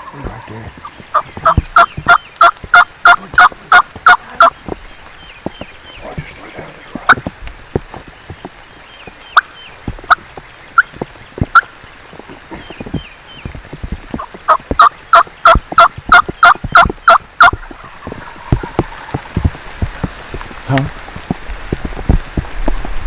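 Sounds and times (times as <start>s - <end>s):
wild turkey yelping: 0.0s - 4.5s.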